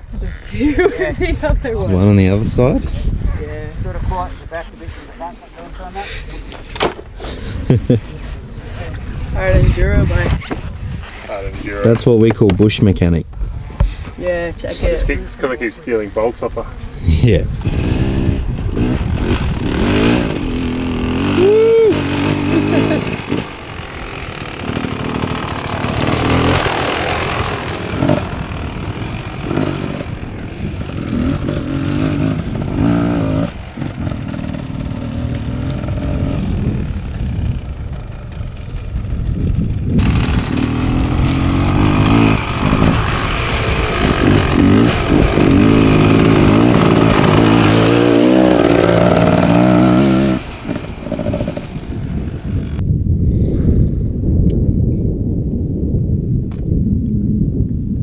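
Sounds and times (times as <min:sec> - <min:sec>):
dirt bike engine revving: 0:14.4 - 0:52.8.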